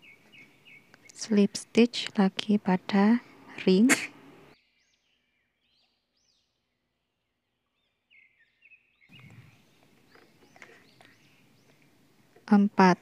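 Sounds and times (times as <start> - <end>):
faint bird chirps: 4.4 - 11.8.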